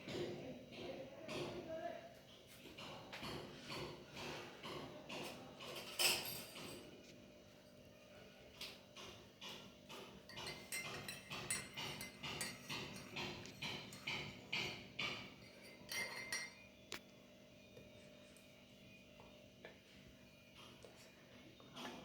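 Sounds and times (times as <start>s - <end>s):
metal spoon clinking on vessel: 10.0s - 14.3s, 15.3s - 16.8s.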